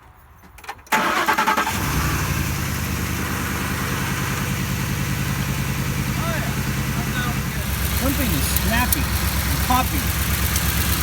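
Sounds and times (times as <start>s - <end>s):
engine cranking and starting: 0.9s - 11.0s
engine idling: 1.1s - 11.0s.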